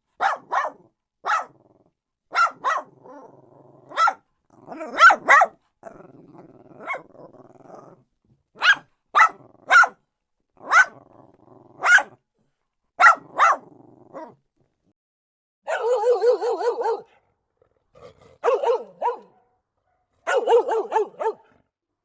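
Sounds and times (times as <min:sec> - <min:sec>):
small dog barking: 0:00.2 - 0:01.6, 0:02.3 - 0:03.3, 0:03.9 - 0:05.6, 0:06.8 - 0:07.1, 0:08.6 - 0:10.0, 0:10.6 - 0:11.0, 0:11.8 - 0:12.2, 0:13.0 - 0:14.4, 0:15.7 - 0:17.2, 0:18.4 - 0:21.6
dog growling: 0:01.5 - 0:02.0, 0:02.9 - 0:05.2, 0:05.8 - 0:08.1, 0:11.0 - 0:11.9, 0:13.6 - 0:14.4, 0:16.9 - 0:19.2.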